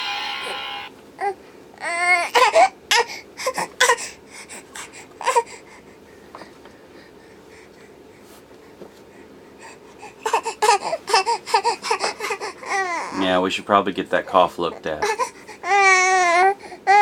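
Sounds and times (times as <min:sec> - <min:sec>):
whining cry-like sound: 0:00.0 - 0:00.9.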